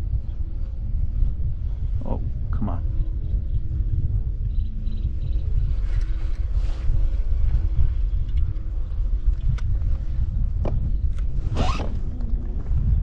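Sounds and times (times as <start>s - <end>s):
wind buffeting microphone: 0.0s - 13.0s
short rasping zip: 11.5s - 12.1s.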